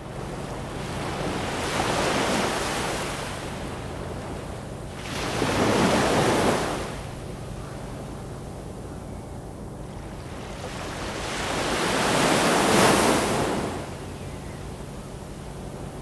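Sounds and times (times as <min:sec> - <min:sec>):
ocean waves washing in: 0:00.0 - 0:07.2, 0:09.9 - 0:14.2
low steady hum: 0:00.0 - 0:16.0.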